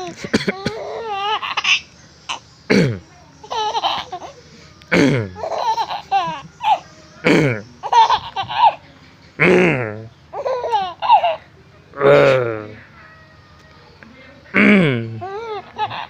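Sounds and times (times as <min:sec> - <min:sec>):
baby giggling: 0:00.0 - 0:02.4, 0:03.4 - 0:08.8, 0:09.4 - 0:11.4, 0:15.0 - 0:16.0
man coughing harshly: 0:00.2 - 0:00.8, 0:02.7 - 0:03.0, 0:04.9 - 0:05.3.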